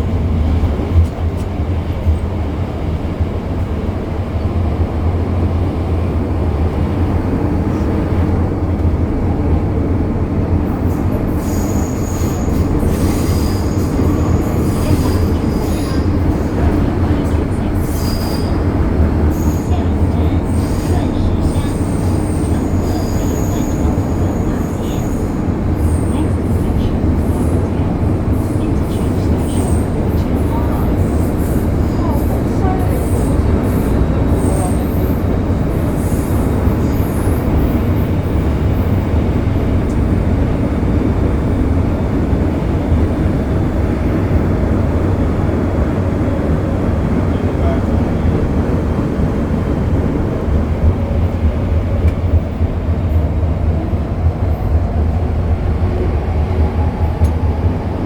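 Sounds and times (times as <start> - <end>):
train rumbling along track: 0.0 - 58.0
train wheels squealing: 10.8 - 27.6, 28.3 - 39.2.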